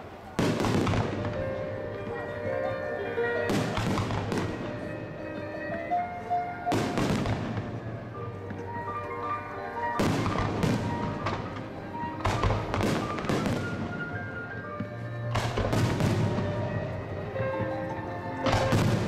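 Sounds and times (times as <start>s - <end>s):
fireworks bangs with crackling: 0.0s - 2.4s, 3.4s - 5.0s, 6.7s - 8.0s, 9.9s - 14.5s, 15.3s - 17.0s, 18.4s - 19.0s
music playing: 0.0s - 19.0s.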